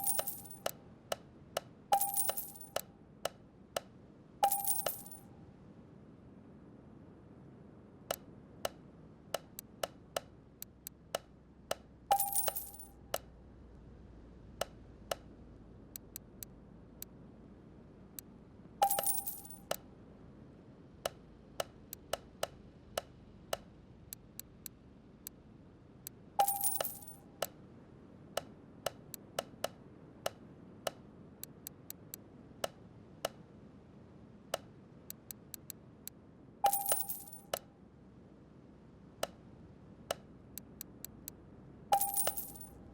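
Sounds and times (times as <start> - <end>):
ringing metallic clink: 0.0 - 0.7, 2.0 - 2.9, 4.4 - 5.2, 12.1 - 13.0, 18.8 - 19.7, 26.4 - 27.2, 36.7 - 37.6, 42.0 - 42.8
sharp metallic clicks: 0.0 - 5.2, 8.1 - 13.3, 21.0 - 24.8, 26.4 - 27.6, 28.4 - 33.4, 34.5 - 35.8, 36.7 - 37.6, 42.0 - 42.7.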